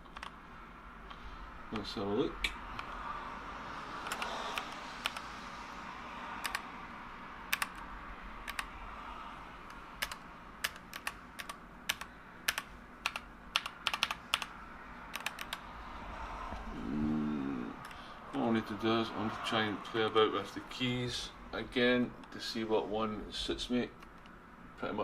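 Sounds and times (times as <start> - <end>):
mechanical keyboard clicking: 4.0 - 5.2, 6.4 - 6.6, 7.5 - 7.8, 8.4 - 8.7, 10.0 - 14.5, 15.1 - 15.6.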